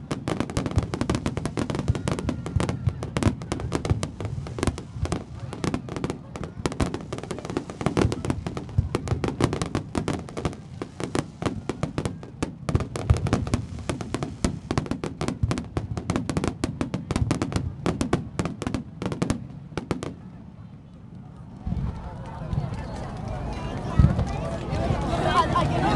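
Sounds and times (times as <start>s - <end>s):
fireworks bangs and cracks: 0.0s - 20.4s.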